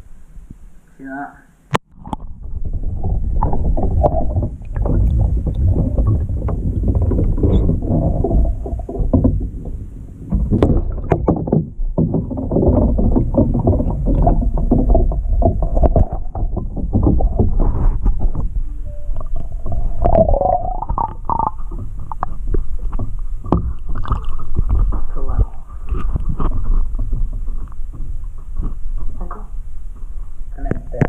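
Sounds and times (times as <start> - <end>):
water sloshing and gurgling: 1.8 - 31.0
small knocks and clicks: 3.0 - 20.3.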